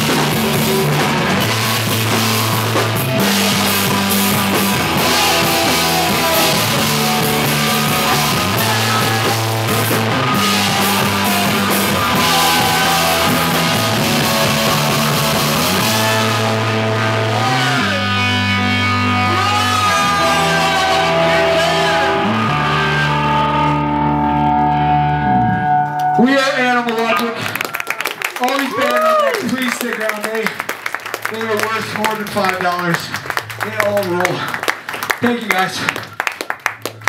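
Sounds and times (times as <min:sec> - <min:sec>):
drum kit: 0:00.0 - 0:23.8
electric guitar: 0:00.0 - 0:26.5.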